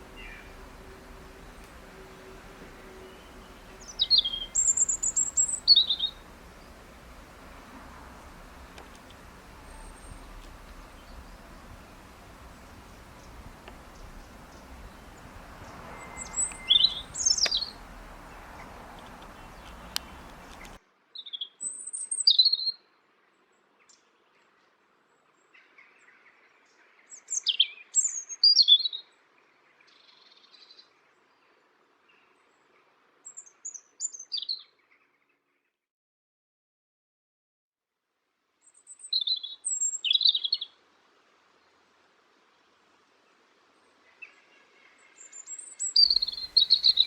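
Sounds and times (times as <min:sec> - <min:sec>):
steady background hiss: 0:00.0 - 0:21.1, 0:38.3 - 0:47.0
small songbird chirping: 0:00.0 - 0:22.8, 0:25.8 - 0:32.4, 0:33.2 - 0:34.9, 0:38.6 - 0:40.8, 0:43.8 - 0:47.0.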